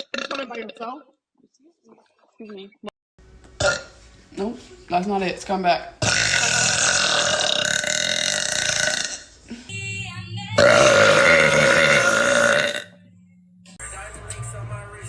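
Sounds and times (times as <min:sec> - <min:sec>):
woman belching: 0:00.0 - 0:00.9, 0:03.6 - 0:03.9, 0:06.0 - 0:09.3, 0:10.6 - 0:13.0.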